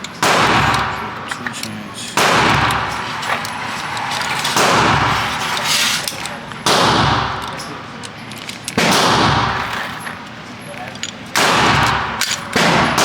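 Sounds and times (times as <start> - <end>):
gunshots echoing indoors: 0.1 - 1.5, 2.2 - 5.5, 6.6 - 7.7, 8.7 - 9.7, 11.4 - 13.0.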